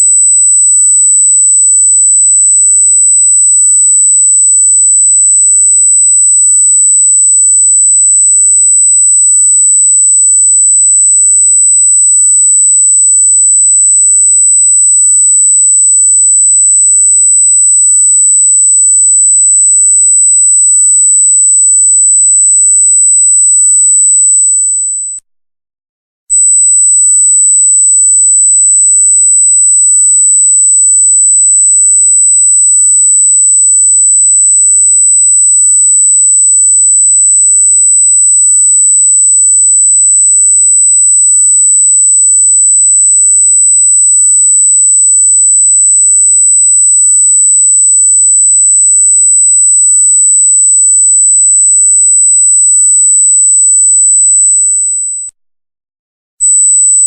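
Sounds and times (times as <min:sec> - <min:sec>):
high-pitched electronic tone: 0:56.4 - 0:57.0.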